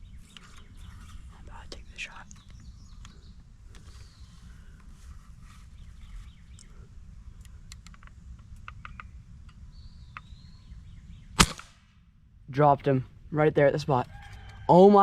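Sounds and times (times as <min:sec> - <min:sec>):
faint ticks and chirps: 0:00.2 - 0:04.9, 0:05.8 - 0:10.7
pellet rifle shot crack: 0:11.4 - 0:12.0.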